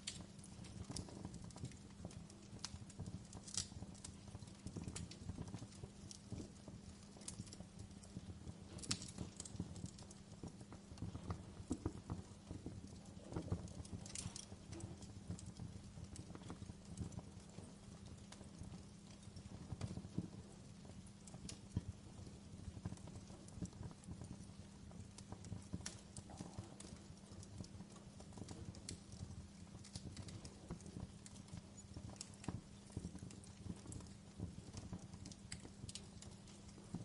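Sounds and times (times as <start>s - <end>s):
wood fire crackling: 0.0s - 37.0s.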